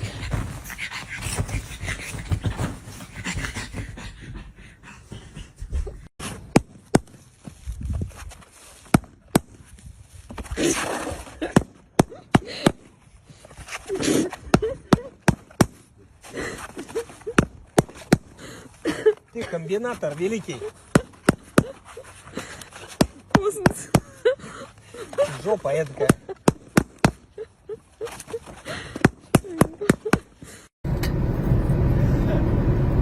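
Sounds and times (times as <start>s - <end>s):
dog panting: 0.0s - 6.1s.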